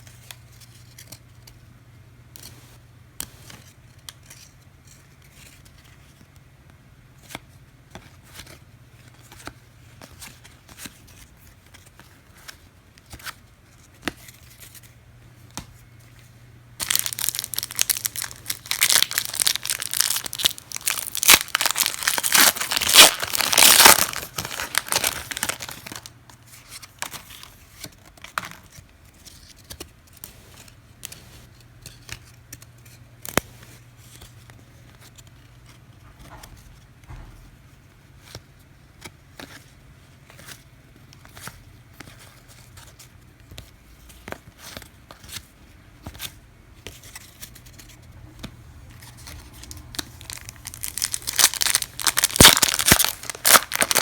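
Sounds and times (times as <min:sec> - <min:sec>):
wrapper tearing and crackling: 0:16.8 - 0:26.1, 0:49.2 - 0:54.0.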